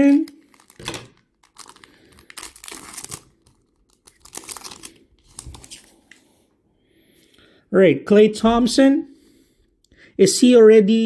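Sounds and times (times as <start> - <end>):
wrapper tearing and crinkling: 0.0 - 6.0.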